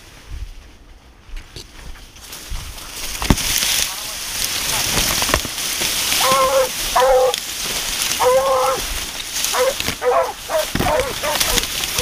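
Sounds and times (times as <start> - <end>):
wild boars grunting: 6.2 - 7.4, 8.1 - 12.0.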